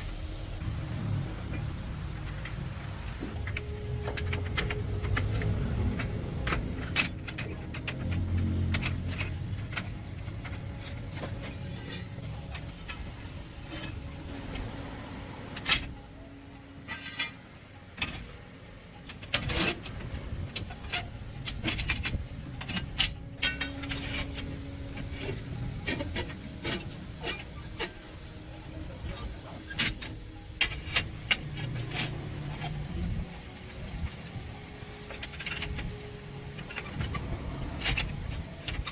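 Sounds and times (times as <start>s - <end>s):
low rumble: 0.0s - 16.8s
metal tools clinking and knocking: 3.2s - 14.6s, 19.0s - 38.9s.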